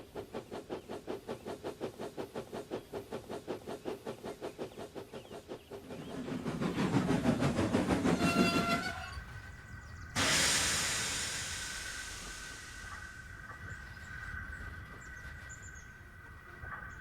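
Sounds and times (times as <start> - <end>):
steam locomotive chuffing: 0.0 - 17.0
train whistle: 8.1 - 9.3
hiss of released steam: 10.1 - 14.5.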